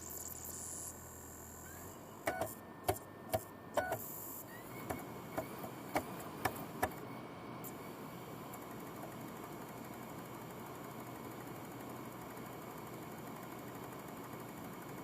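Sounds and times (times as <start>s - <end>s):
cd drive whirring whine: 0.0s - 15.0s
cd drive sharp clicks: 2.2s - 4.1s, 4.8s - 7.0s.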